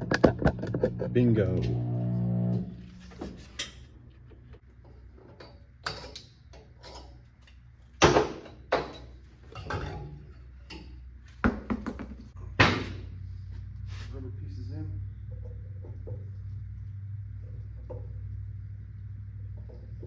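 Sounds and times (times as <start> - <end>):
wheel balancer humming: 0.0 - 5.0, 12.4 - 20.0.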